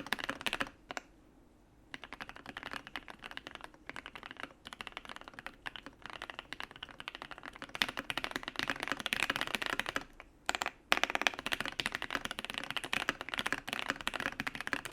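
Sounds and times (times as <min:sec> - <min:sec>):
mechanical keyboard typing: 0:00.0 - 0:01.1, 0:01.9 - 0:14.9.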